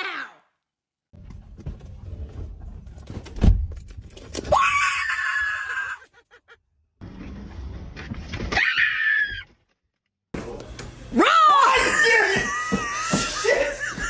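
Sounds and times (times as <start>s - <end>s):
person screaming in fright: 4.5s - 6.1s, 11.2s - 14.0s.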